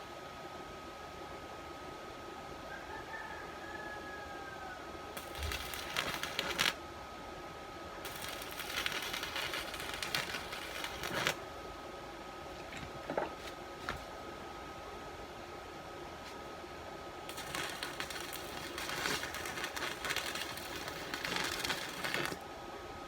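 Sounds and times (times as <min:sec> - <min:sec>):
welding arc crackling: 0:05.2 - 0:06.8, 0:08.0 - 0:11.4, 0:17.3 - 0:22.4.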